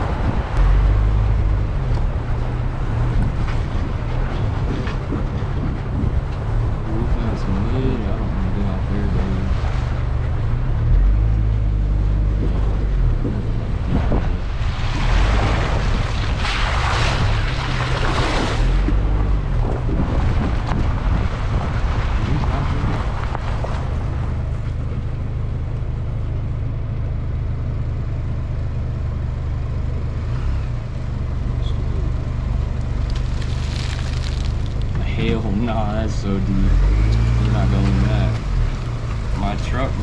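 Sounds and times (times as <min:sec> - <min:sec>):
rushing noise: 0:00.0 - 0:25.1
pickup truck engine rumble: 0:00.0 - 0:40.0.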